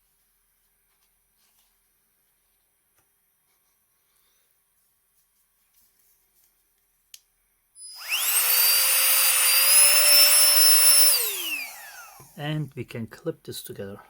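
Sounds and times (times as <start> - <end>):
electric air blower whine: 7.8 - 12.4.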